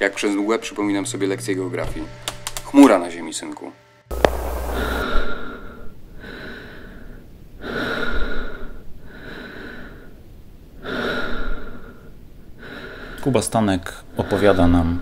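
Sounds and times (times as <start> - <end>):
person breathing heavily with wheeze: 4.7 - 10.2, 10.8 - 13.2.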